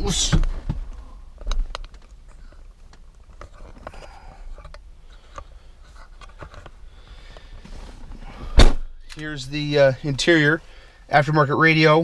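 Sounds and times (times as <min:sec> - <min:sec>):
low steady rumble: 0:00.0 - 0:12.0
handling clicks and rustles: 0:00.1 - 0:08.2.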